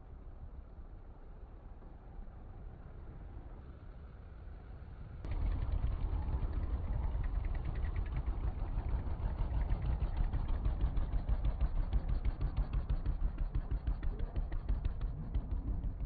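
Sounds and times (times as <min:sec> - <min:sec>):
engine idling: 0:05.3 - 0:16.0.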